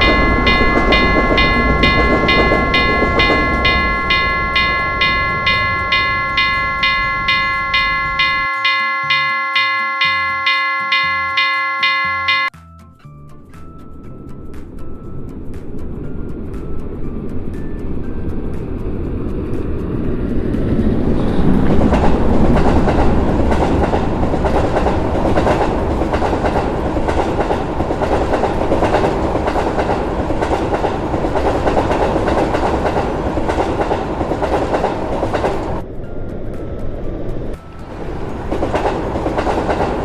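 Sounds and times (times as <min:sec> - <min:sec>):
train wheels clicking over rail joints: 0:00.0 - 0:12.5, 0:20.5 - 0:35.8, 0:37.6 - 0:40.0.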